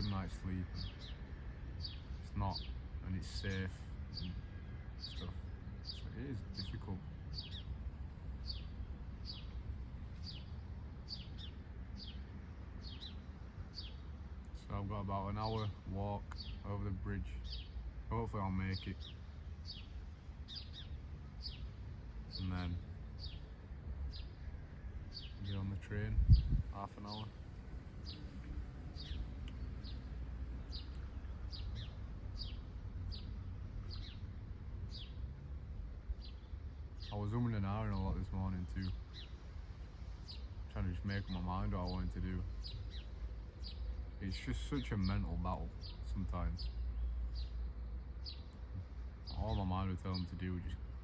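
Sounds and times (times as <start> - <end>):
songbird chirping: 0.0 - 51.0
steady low rumble: 20.5 - 39.9.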